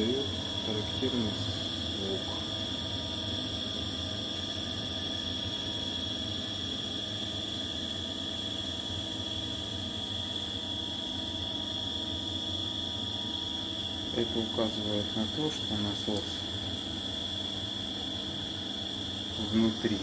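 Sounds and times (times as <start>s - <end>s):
circulation pump humming: 0.0s - 20.0s.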